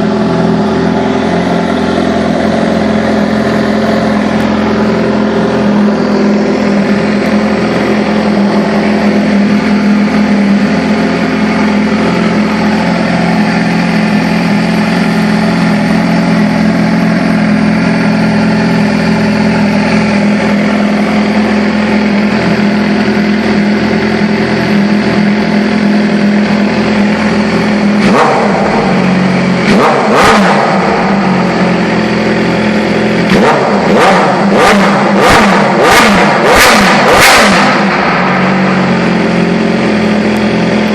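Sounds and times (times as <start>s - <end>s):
motorcycle engine running: 0.0s - 40.9s
engine revving in throttle blips: 27.3s - 39.0s.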